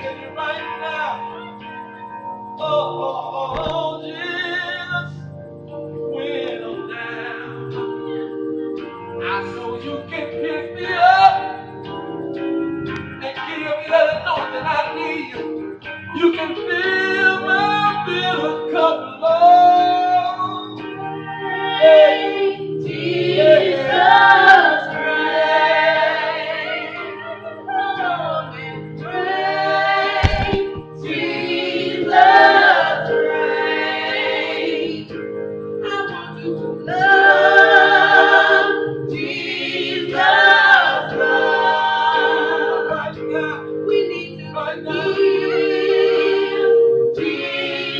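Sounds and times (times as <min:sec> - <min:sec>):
gospel group singing: 0:00.0 - 0:15.5, 0:16.1 - 0:47.9
held accompaniment chords: 0:00.0 - 0:47.9
low thump: 0:30.2 - 0:31.0.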